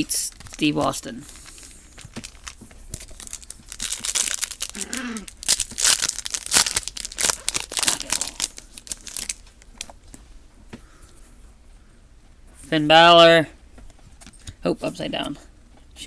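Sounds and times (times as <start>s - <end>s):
plastic wrapper tearing and crinkling: 0.2s - 9.9s.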